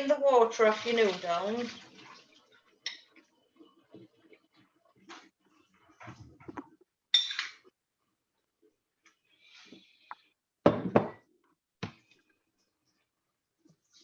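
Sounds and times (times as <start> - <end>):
pots and utensils clinking: 7.1 - 7.6.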